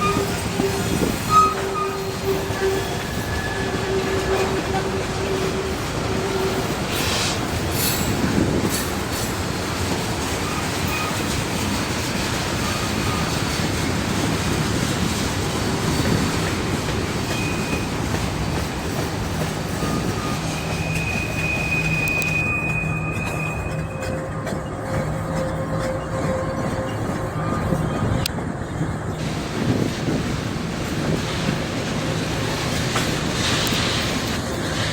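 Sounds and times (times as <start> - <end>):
high-pitched wheel squeals: 0.0 - 7.1, 17.3 - 18.0, 19.4 - 28.2
train wheels rumbling on rail: 0.0 - 34.9.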